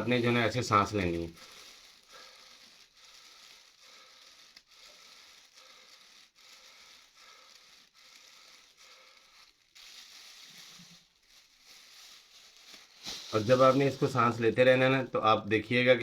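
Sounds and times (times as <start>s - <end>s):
plastic bag crinkling: 0.0s - 16.0s
person breathing into bag: 1.3s - 14.1s.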